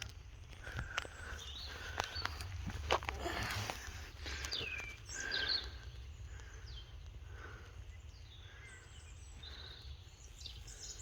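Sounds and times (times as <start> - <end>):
songbirds whistling and chirping: 1.1 - 2.6, 4.0 - 11.0.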